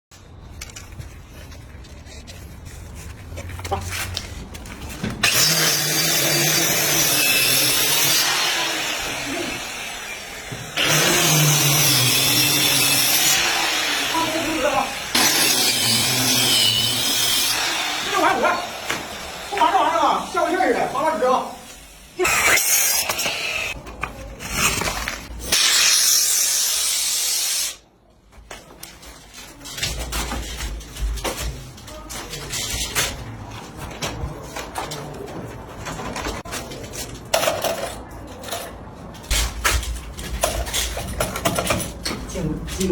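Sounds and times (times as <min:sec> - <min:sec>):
gas spray hiss: 0:25.5 - 0:27.8
knocks and handling noise: 0:28.2 - 0:42.9.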